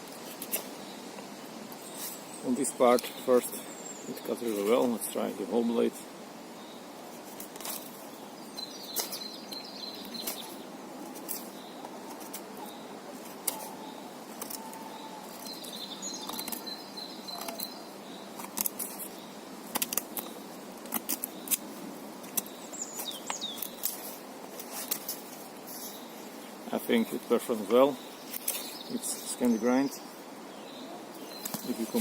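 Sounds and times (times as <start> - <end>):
birds chirping: 0.0 - 32.0
knife shaving wood: 10.0 - 25.5.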